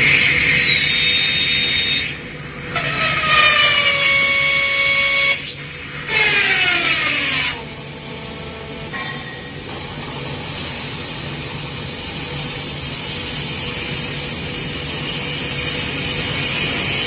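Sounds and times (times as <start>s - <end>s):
high squeal falling in pitch: 0.0s - 2.2s.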